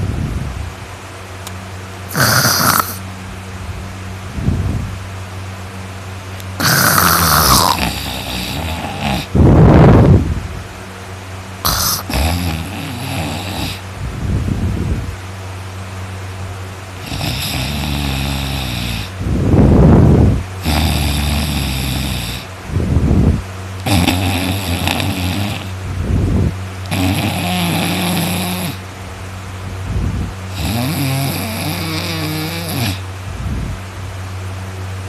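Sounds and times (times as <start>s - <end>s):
steady low hum: 0.0s - 35.0s
person snoring loudly: 2.1s - 3.0s, 6.6s - 10.2s, 11.6s - 13.8s, 17.0s - 22.5s, 23.8s - 25.8s, 26.8s - 28.8s, 30.5s - 33.0s.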